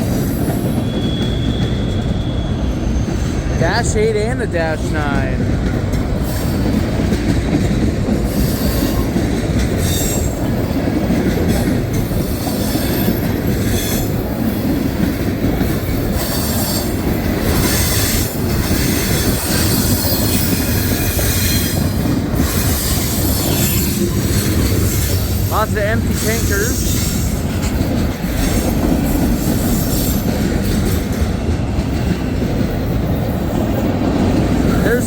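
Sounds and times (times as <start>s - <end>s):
train wheels rumbling on rail: 0.0s - 35.0s
high wheel squeal: 0.3s - 3.6s.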